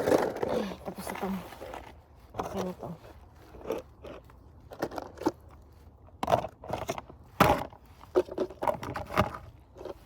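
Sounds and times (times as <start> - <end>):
objects knocking and scraping: 3.5 - 10.0.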